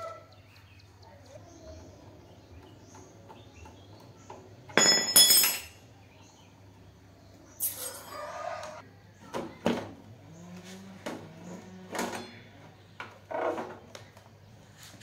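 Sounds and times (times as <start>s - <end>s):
hard objects knocking and clinking: 4.7s - 5.8s.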